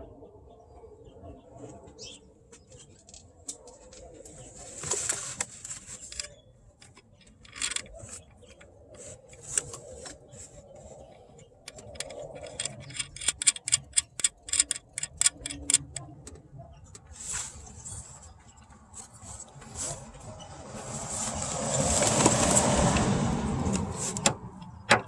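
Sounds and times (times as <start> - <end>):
ratchet wrench clicking: 11.7 - 16.0.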